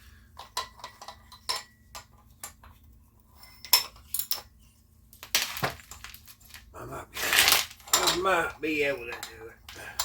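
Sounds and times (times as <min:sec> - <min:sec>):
metal tools clinking: 0:07.3 - 0:10.0.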